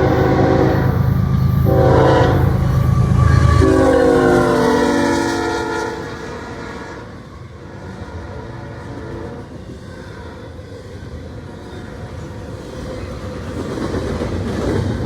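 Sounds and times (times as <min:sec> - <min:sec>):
locomotive horn: 0:00.0 - 0:09.6
deep locomotive engine rumble: 0:00.0 - 0:15.0.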